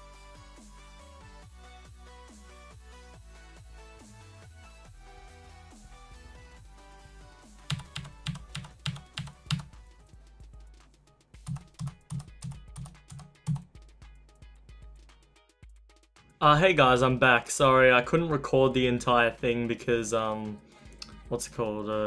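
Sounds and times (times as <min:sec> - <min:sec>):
background music: 0:00.0 - 0:22.0
sharp evenly spaced clicks: 0:07.7 - 0:09.8, 0:11.4 - 0:13.7.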